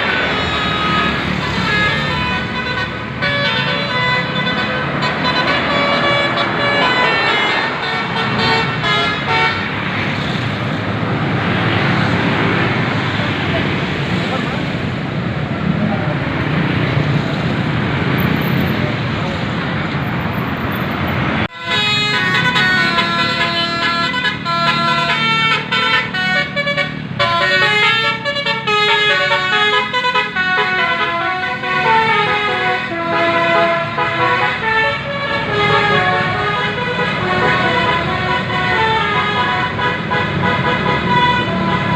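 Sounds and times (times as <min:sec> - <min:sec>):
multi-tone air horn melody: 0:00.0 - 0:09.8, 0:21.5 - 0:41.9
bus engine rumble: 0:00.0 - 0:41.9
traffic noise: 0:00.0 - 0:41.9.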